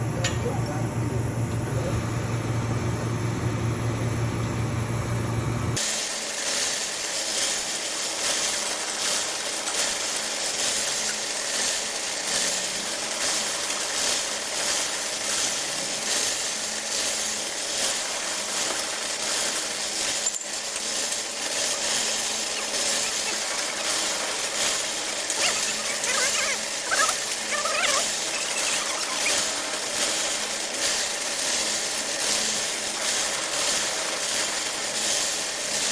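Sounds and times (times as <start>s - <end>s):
welding arc crackling and sizzling: 5.7s - 35.9s.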